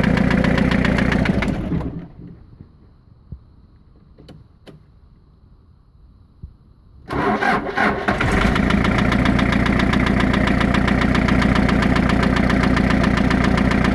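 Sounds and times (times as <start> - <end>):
engine knocking: 0.0 - 2.1, 8.2 - 13.9
car engine cranking and idling: 0.0 - 2.5, 7.1 - 13.9.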